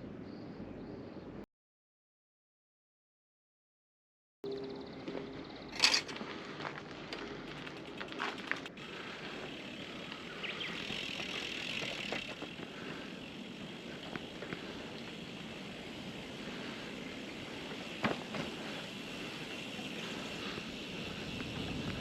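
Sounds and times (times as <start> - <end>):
bike clicks and rattles: 5.7 - 22.0
bicycle tyre noise: 5.8 - 22.0
wind noise: 20.0 - 22.0.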